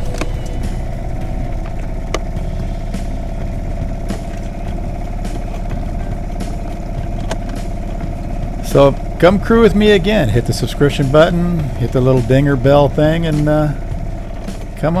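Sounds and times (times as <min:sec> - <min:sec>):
clicks and rattles: 0:00.0 - 0:09.3
engine idling: 0:00.0 - 0:15.0.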